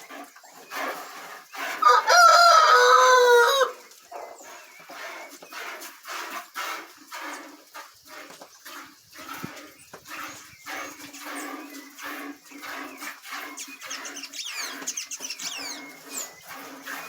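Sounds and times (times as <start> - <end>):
farmyard animals: 0.0 - 17.0.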